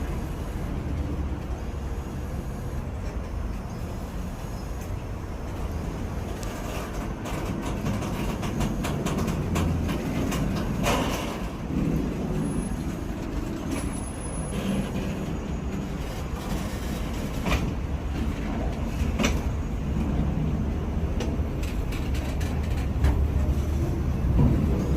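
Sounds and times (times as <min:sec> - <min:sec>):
freight train rolling past: 0:00.0 - 0:24.9
wheels knocking on rails: 0:05.5 - 0:24.9.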